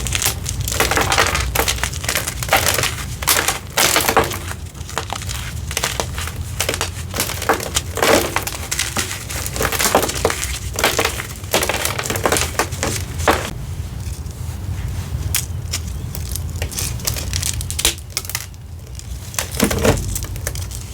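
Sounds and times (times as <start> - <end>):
chalk crunching and crackling: 0.0 - 20.9.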